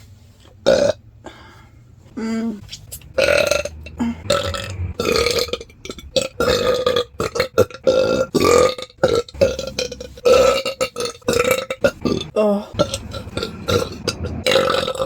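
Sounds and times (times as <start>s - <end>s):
person belching loudly: 3.0s - 15.0s.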